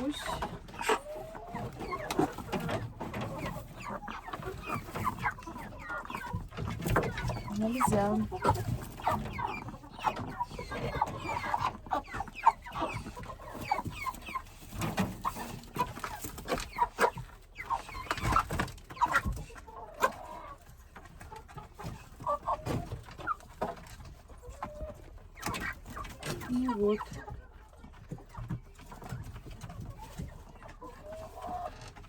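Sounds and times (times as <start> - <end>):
chickens clucking and peeping: 0.0 - 32.0.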